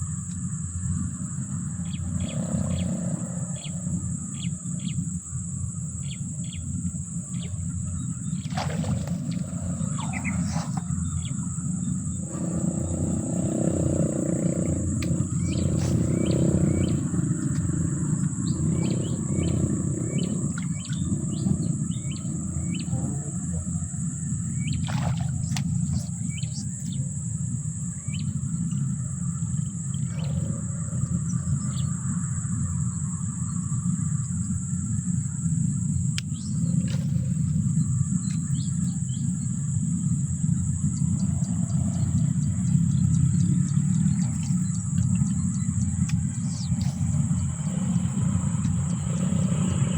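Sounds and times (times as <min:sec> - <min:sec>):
constant high-pitched hiss: 0:00.0 - 0:49.9
steady low rumble: 0:00.0 - 0:49.9
short bird chirps: 0:09.9 - 0:11.3.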